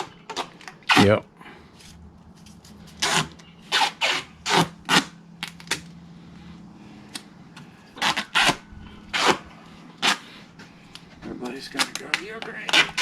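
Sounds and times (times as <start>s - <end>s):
faint low hum: 0.0s - 13.0s
duct tape ripping off roll: 2.9s - 5.9s, 8.0s - 9.4s, 10.0s - 10.3s, 11.8s - 13.0s.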